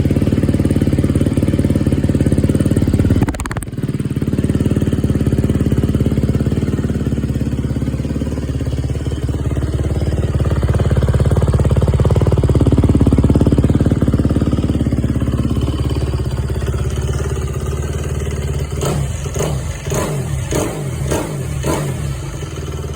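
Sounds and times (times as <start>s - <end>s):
dirt bike engine revving: 18.7s - 22.6s.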